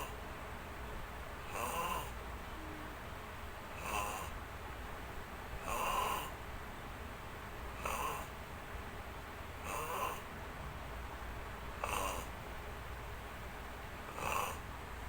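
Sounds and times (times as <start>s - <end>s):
rasping snoring: 1.5s - 2.2s, 3.8s - 4.4s, 5.6s - 6.4s, 7.8s - 8.4s, 9.6s - 10.3s, 11.8s - 12.4s, 14.1s - 14.6s.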